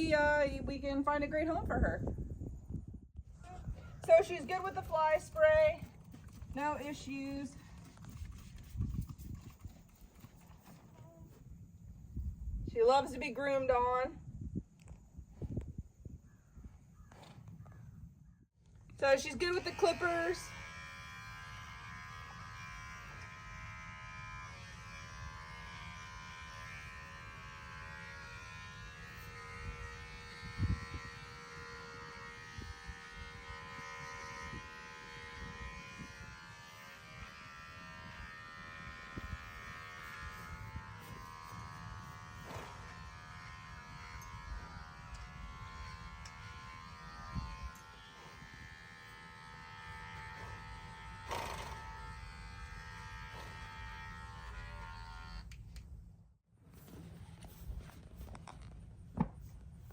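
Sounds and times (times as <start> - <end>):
electric clippers buzzing: 19.0 - 55.9.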